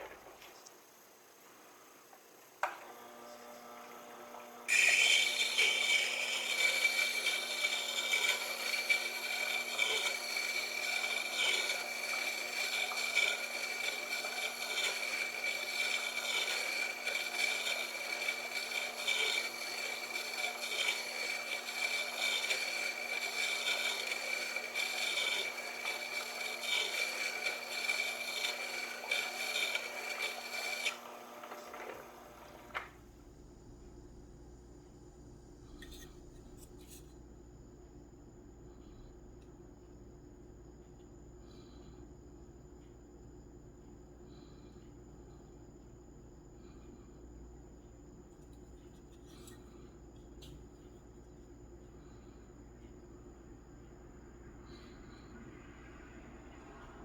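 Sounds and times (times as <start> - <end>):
sharpener motor hum: 2.6 - 32.8
drill bit grinding on stone: 3.0 - 32.7.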